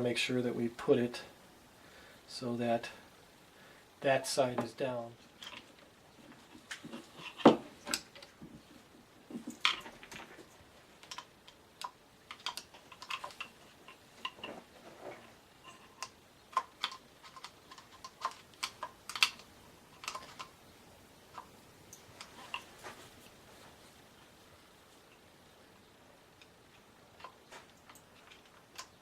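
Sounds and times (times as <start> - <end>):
small parts clicking and tapping: 4.6 - 20.7, 26.3 - 29.0.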